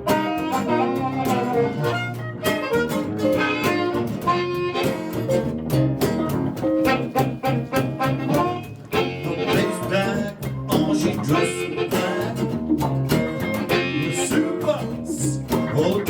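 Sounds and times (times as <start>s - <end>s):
guitar: 0.0s - 16.0s
harmonica lead: 0.0s - 16.0s
steady drum beat: 5.8s - 11.2s.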